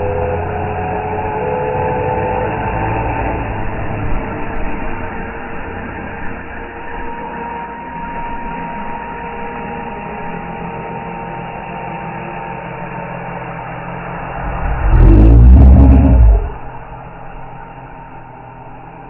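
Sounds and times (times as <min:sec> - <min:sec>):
engine-like hum with whine: 0:00.0 - 0:19.0
monster roar: 0:14.4 - 0:16.6.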